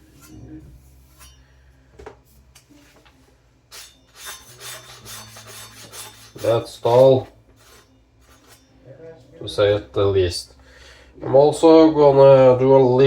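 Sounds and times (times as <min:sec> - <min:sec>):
cleaver edge rasping on hard surface: 0:03.7 - 0:08.8.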